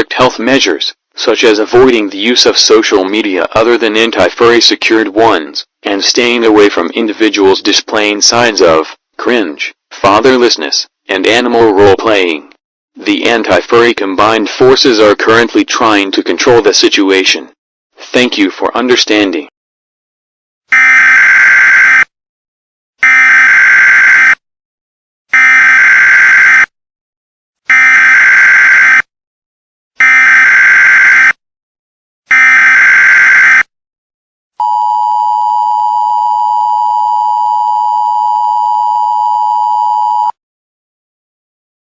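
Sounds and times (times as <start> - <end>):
screeching digital data bursts: 32.3 - 33.7
two-tone attention signal: 34.6 - 40.4.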